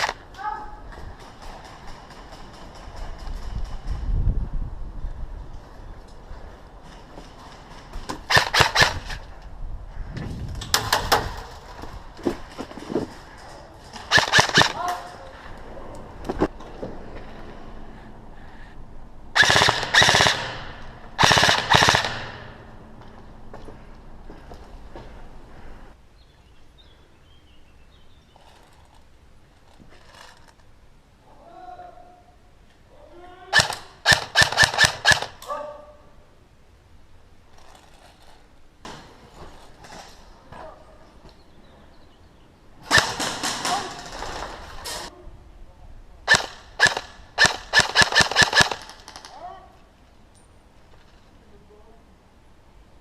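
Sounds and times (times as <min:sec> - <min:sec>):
airsoft gun shots: 0:08.2 - 0:09.2, 0:14.1 - 0:14.8, 0:19.4 - 0:22.6, 0:33.6 - 0:35.4, 0:42.8 - 0:44.1, 0:46.3 - 0:49.3.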